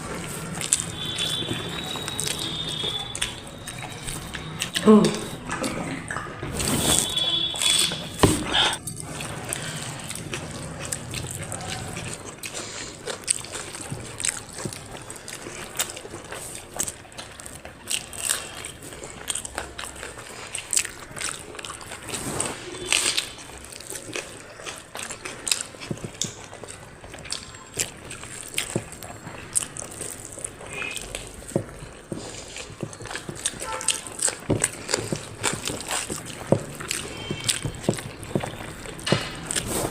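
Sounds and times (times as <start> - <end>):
wet chewing and mouth smacks: 0.0 - 39.9.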